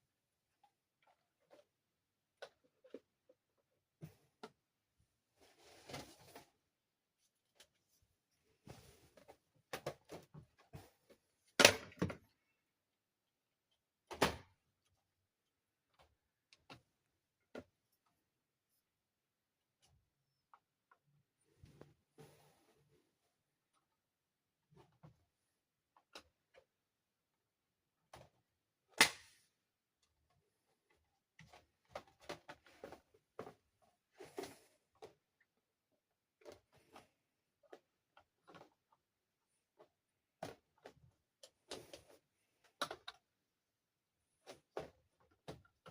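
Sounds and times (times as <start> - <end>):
plastic snap: 29.0 - 29.4.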